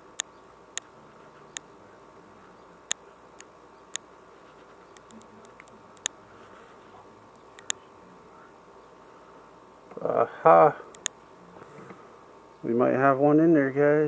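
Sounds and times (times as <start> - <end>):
faint steady hiss: 0.0 - 14.0.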